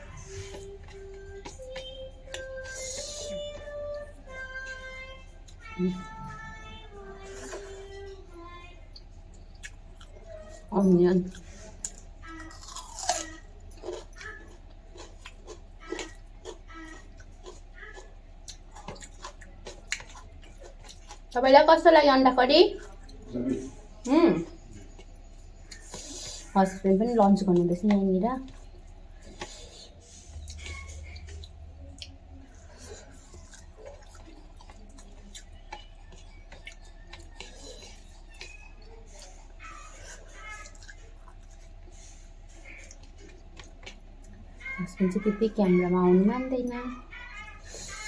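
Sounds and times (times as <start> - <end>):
food crunching: 0.0 - 21.4, 27.2 - 44.8
low steady hum: 0.0 - 48.0
chewing and mouth smacking: 8.9 - 21.4, 27.4 - 44.8.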